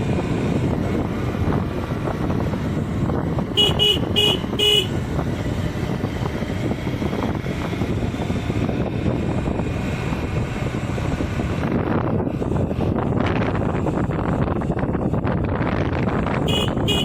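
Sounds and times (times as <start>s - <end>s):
road and engine noise: 0.0s - 17.0s
wind buffeting microphone: 0.0s - 17.0s
vehicle horn beep: 3.6s - 5.0s, 16.5s - 17.0s.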